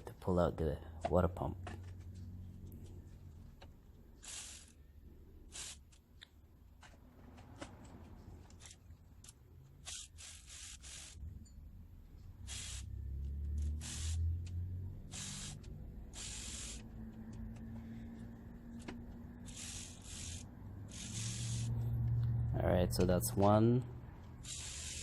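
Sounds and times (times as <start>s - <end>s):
ratchet wrench ratcheting: 4.2s - 4.9s, 5.5s - 6.0s, 8.4s - 11.6s, 12.4s - 17.8s, 18.8s - 21.8s, 24.2s - 25.0s.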